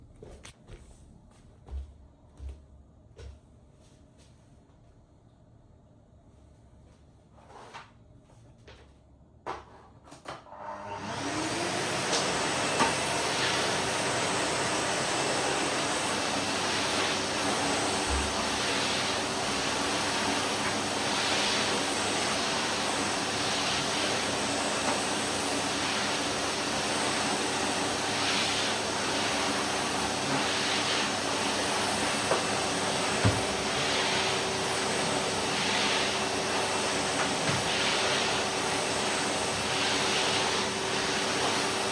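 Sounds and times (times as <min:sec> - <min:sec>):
vacuum cleaner running: 0:10.2 - 0:41.9.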